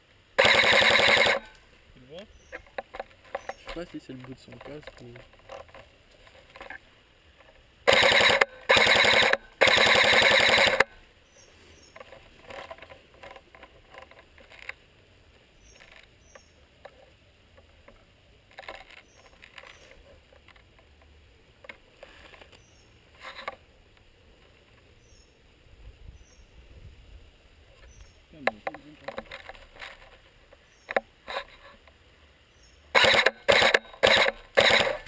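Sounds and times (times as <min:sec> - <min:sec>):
airsoft gun full-auto bursts: 0:00.4 - 0:01.6, 0:07.9 - 0:11.0, 0:32.9 - 0:35.0
soft clicks and rustles: 0:02.5 - 0:07.7, 0:11.4 - 0:25.0, 0:27.7 - 0:32.1.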